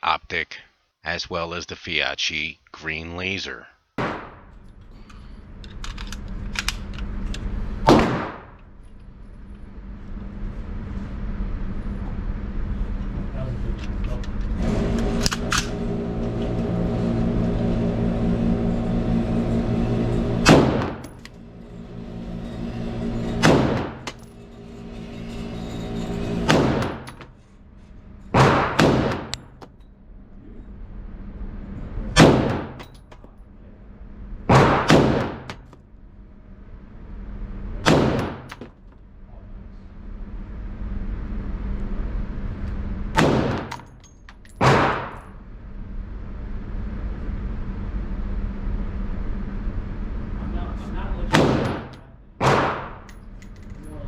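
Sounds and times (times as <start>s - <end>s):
steady hum: 1.1s - 44.1s
rifle gunshots: 4.0s - 4.4s, 7.9s - 8.5s, 28.4s - 29.3s, 32.2s - 32.8s, 34.5s - 35.5s, 37.8s - 38.5s, 43.2s - 43.7s, 51.3s - 53.1s.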